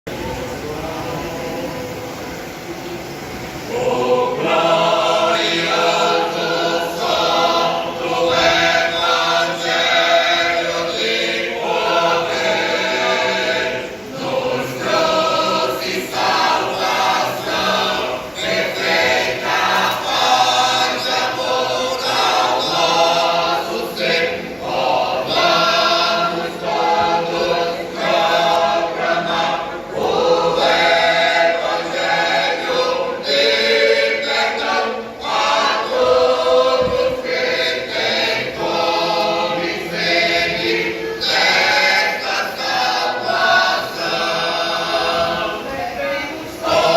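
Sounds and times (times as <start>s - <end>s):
choir singing a hymn: 0.1s - 46.9s.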